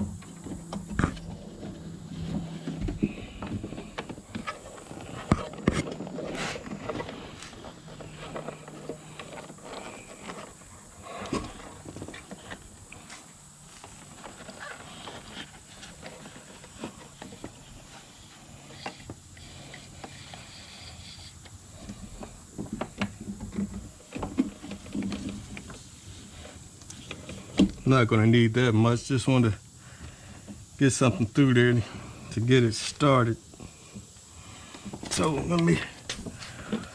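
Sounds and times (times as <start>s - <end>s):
rustling: 0.0s - 28.0s.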